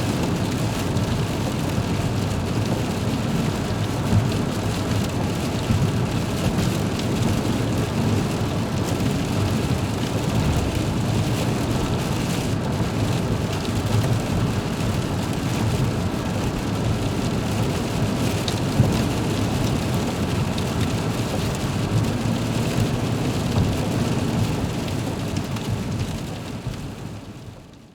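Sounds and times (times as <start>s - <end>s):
rain drumming on windshield: 0.0s - 27.9s.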